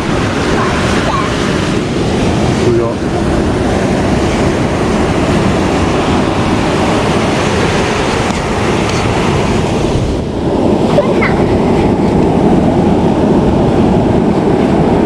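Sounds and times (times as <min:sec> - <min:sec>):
waves breaking on beach: 0:00.0 - 0:15.0
wind buffeting microphone: 0:00.0 - 0:15.0.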